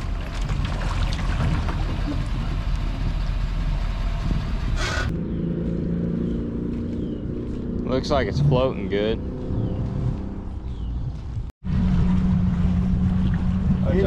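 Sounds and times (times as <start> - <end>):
boat engine idling: 0.0 - 5.1
loud rough rumble: 0.0 - 14.0.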